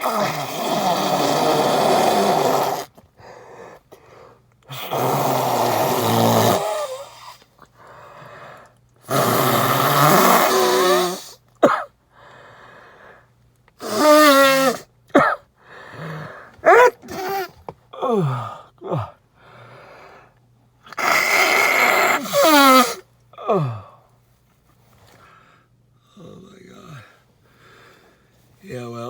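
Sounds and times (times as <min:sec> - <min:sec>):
man blowing nose: 0:00.0 - 0:07.4, 0:09.0 - 0:11.4, 0:13.8 - 0:18.3, 0:20.9 - 0:23.7.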